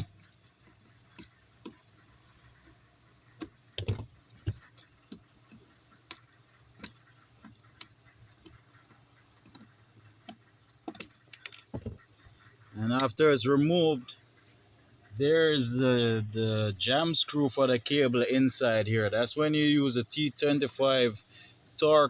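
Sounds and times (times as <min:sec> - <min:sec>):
faint steady hum: 0:00.0 - 0:22.0
screwdriver prying clicks and taps: 0:10.3 - 0:12.0.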